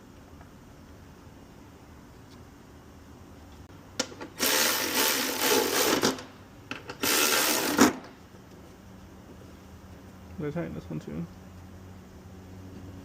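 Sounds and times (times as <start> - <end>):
cordless power tool whirring: 4.4 - 6.3, 7.0 - 8.0.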